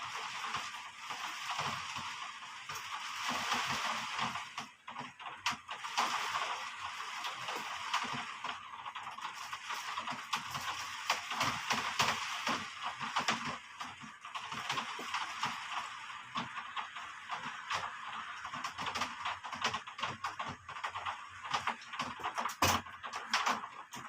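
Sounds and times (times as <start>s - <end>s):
heavy rain hissing: 0.0s - 4.6s, 5.7s - 19.6s
raindrops tapping: 0.0s - 24.0s.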